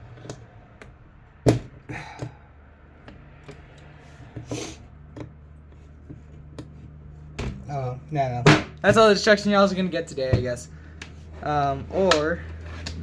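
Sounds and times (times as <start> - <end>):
low steady hum: 0.0 - 13.0
tool scraping: 10.4 - 13.0.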